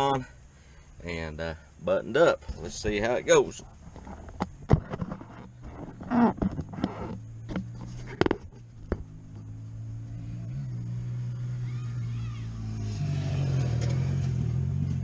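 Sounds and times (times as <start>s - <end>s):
low engine hum: 4.0s - 15.0s.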